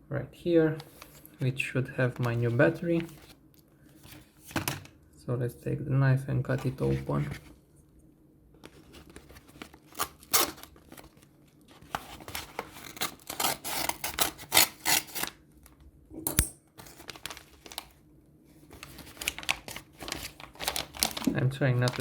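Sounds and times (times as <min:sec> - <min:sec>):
knife slicing and tearing packaging: 0:09.8 - 0:10.7, 0:12.2 - 0:15.4.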